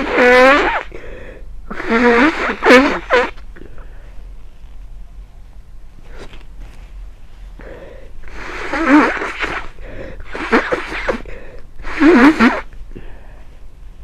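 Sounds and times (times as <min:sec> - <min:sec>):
person sneezing: 0:08.3 - 0:13.1.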